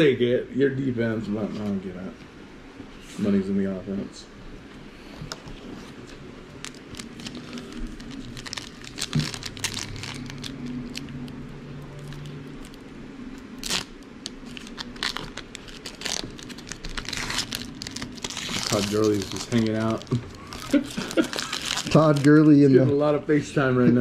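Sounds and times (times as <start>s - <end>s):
cards being shuffled: 5.2s - 11.4s, 13.6s - 22.5s
plastic wrapper crinkling and tearing: 5.4s - 12.8s, 13.4s - 22.6s.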